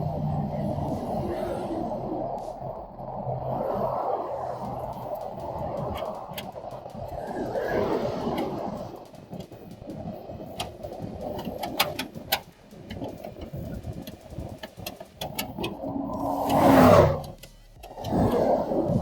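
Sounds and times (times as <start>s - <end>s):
freeway traffic rushing: 13.0s - 18.0s.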